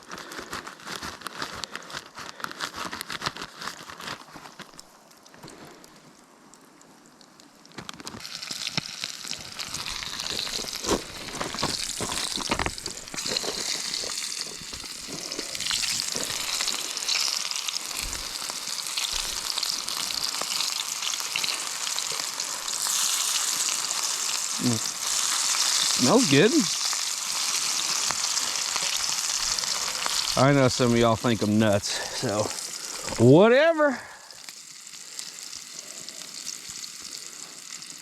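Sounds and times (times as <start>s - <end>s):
fish sizzling in a pan: 8.1s - 38.0s.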